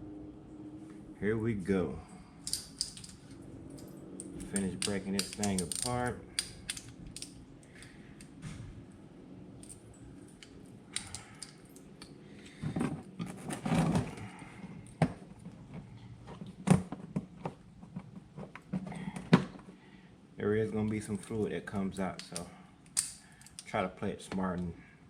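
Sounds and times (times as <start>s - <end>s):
metal tools clinking: 2.4s - 8.0s.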